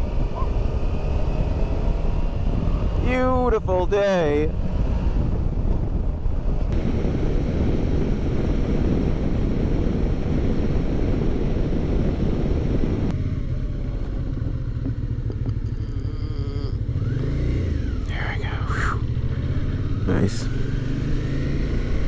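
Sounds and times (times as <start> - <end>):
motorcycle engine running: 0.0 - 3.4, 4.4 - 22.0
wind rushing over microphone: 0.0 - 13.2.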